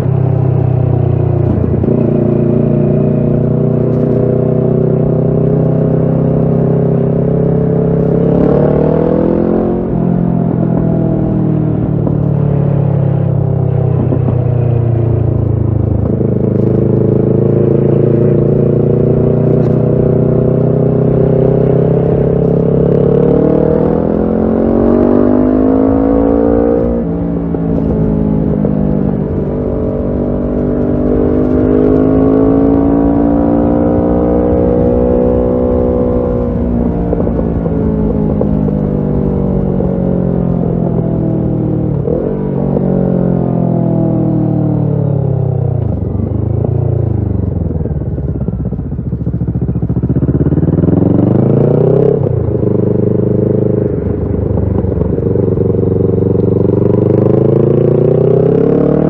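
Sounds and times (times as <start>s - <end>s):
motorcycle engine revving: 0.0s - 59.0s.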